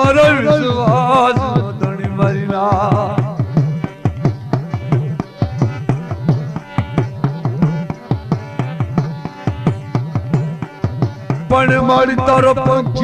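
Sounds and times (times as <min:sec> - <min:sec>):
person singing: 0:00.0 - 0:03.5, 0:11.5 - 0:13.0
drum beating quick rhythm: 0:00.0 - 0:13.0.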